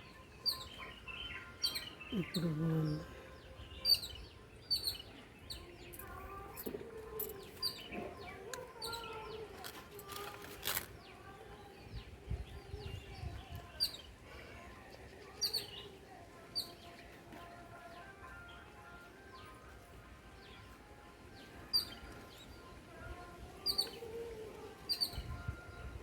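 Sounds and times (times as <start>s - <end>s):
faint wavering bird calls: 0.0s - 9.5s, 21.4s - 25.9s
small birds chirping: 0.0s - 26.0s.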